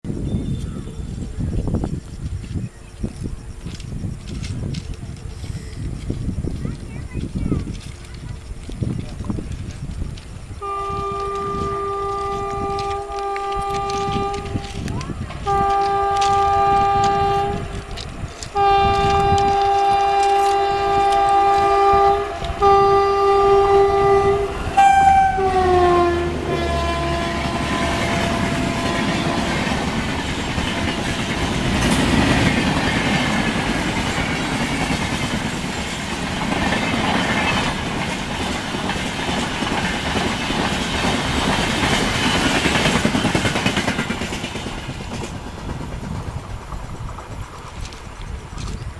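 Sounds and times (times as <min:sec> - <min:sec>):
train wheels clattering: 0:01.7 - 0:48.9
locomotive horn blasts: 0:10.6 - 0:14.8, 0:15.4 - 0:32.2.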